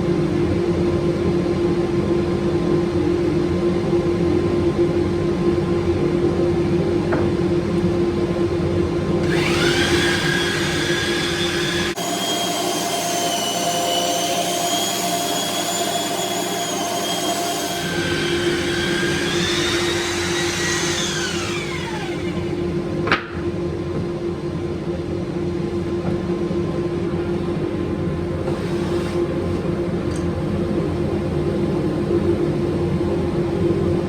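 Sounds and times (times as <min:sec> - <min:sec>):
machine hum: 0:09.0 - 0:23.0
power tool whine: 0:09.2 - 0:22.8.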